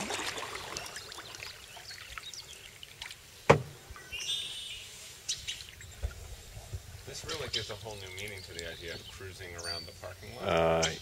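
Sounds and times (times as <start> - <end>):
paddle splashing and dripping: 0.0 - 4.4, 7.9 - 9.5
sharp wooden knock: 3.5 - 3.7
bird calling: 3.8 - 6.2, 7.1 - 11.0.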